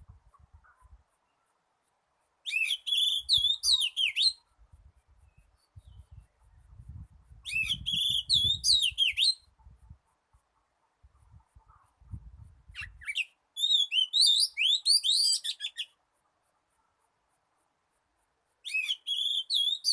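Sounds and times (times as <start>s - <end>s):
bird song whistles and trills: 2.4s - 4.6s, 5.2s - 9.6s, 12.7s - 16.0s, 18.6s - 19.9s
faint low rumble: 9.5s - 13.0s.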